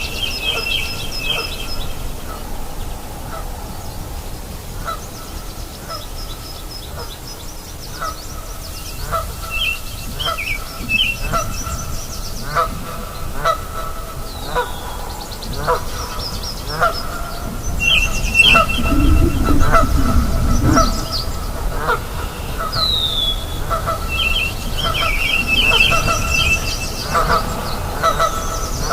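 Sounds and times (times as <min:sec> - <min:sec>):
birds chirping and whistling: 0:17.7 - 0:21.5.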